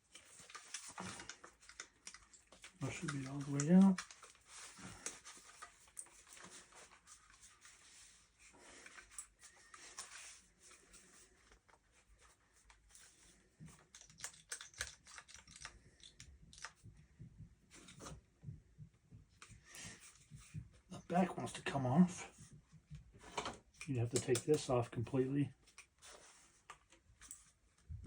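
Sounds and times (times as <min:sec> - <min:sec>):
clicks of gun parts handled: 0:23.3 - 0:24.6.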